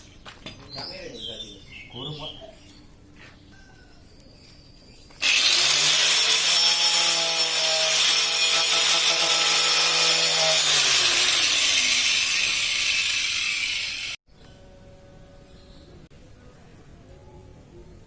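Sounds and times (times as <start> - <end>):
table saw cutting wood: 5.2 - 14.2.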